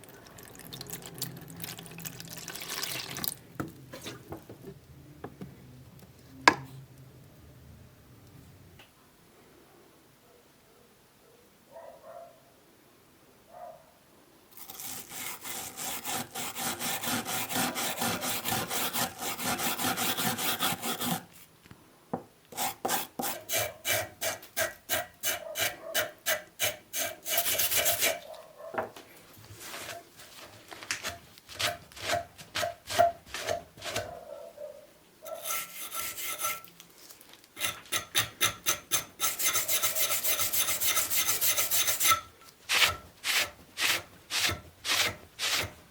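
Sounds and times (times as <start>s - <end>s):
hand scraping wooden plane: 14.8s - 21.3s, 22.5s - 28.2s, 29.7s - 34.2s, 35.3s - 36.7s, 37.6s - 45.8s.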